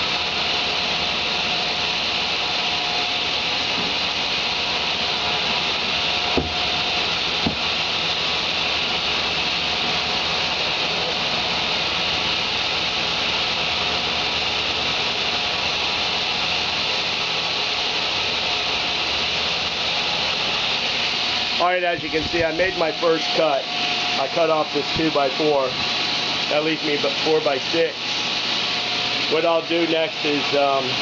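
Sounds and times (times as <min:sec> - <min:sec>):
table saw cutting board: 0:00.0 - 0:17.4.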